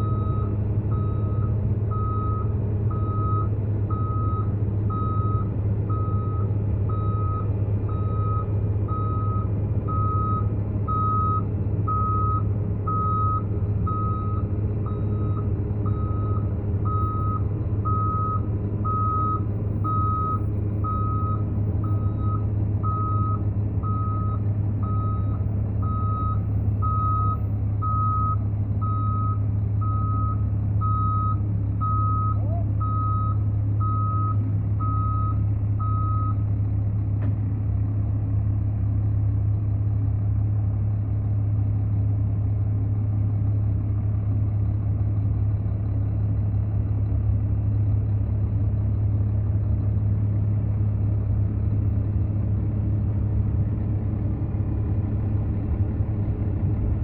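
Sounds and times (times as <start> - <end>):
reversing alarm beeping: 0.0 - 36.4
diesel engine running: 0.0 - 57.0.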